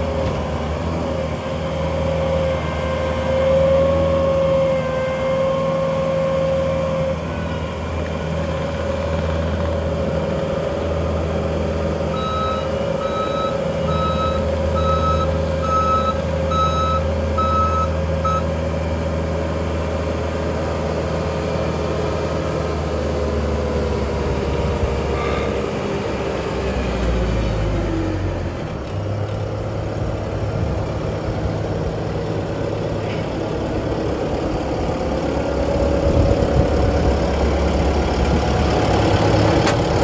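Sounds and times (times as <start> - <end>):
diesel engine running with whine: 0.0 - 40.0
reversing alarm beeping: 12.1 - 18.5.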